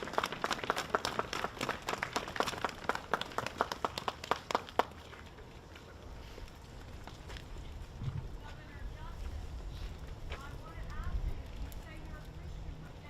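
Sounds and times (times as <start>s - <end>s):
audience applauding: 0.0s - 5.1s.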